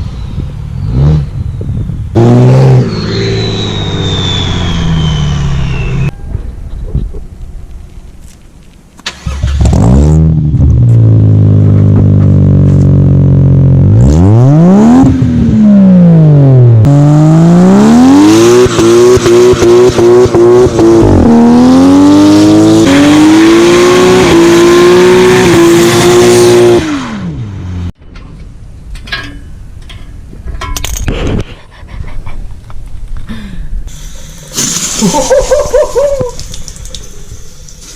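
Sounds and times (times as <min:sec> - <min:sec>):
car engine revving: 0:02.1 - 0:06.1, 0:09.1 - 0:28.0
turbo whistle: 0:02.7 - 0:06.5.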